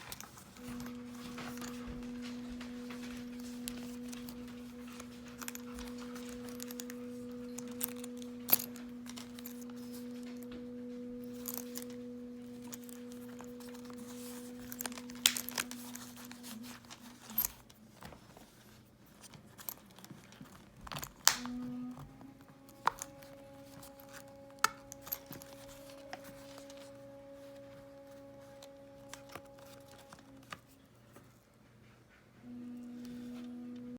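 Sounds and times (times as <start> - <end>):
notebook pages turning: 0.0 - 10.6
soft ambient music: 0.0 - 17.7, 20.9 - 31.1, 32.4 - 33.9.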